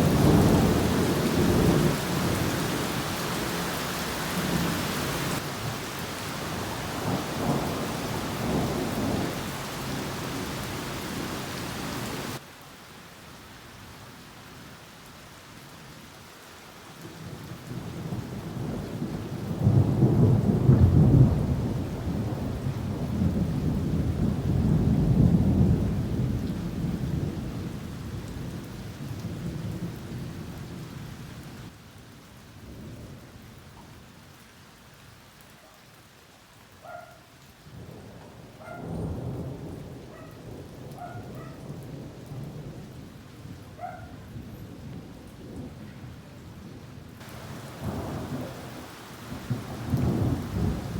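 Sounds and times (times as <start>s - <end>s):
rolling thunder: 0.0s - 3.1s, 6.6s - 10.6s, 17.8s - 28.6s, 37.8s - 43.0s, 47.2s - 50.9s
heavy rain pouring: 0.0s - 50.9s.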